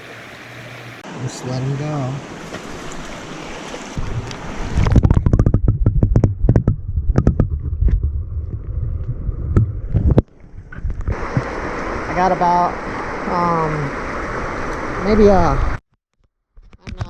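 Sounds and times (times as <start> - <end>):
stream hiss: 0.0 - 4.9, 11.1 - 15.8
muffled underwater rush: 0.0 - 15.8
bubbling clicks: 4.0 - 11.2.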